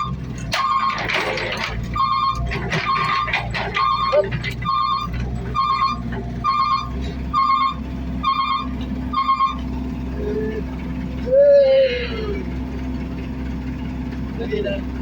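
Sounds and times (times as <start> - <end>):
back-up alarm beeping: 0.0 - 9.7
diesel engine running: 0.0 - 15.0.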